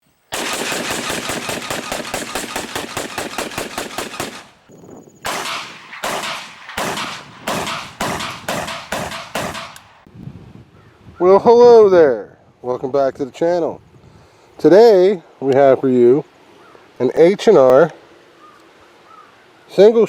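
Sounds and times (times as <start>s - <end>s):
automatic gunfire: 0.3s - 4.7s, 5.3s - 10.1s
single gunshots with echo: 0.3s - 4.7s, 5.3s - 10.1s.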